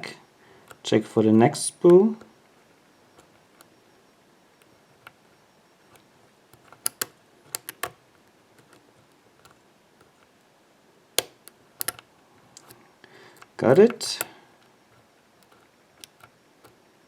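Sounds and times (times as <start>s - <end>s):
lock pick metallic clicks: 5.9s - 8.0s, 11.2s - 12.8s, 15.4s - 16.8s.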